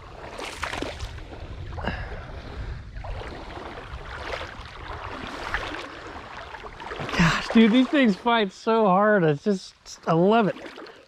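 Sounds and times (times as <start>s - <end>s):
wind rumbling on microphone: 0.0s - 8.3s
rushing creek water: 0.0s - 11.0s.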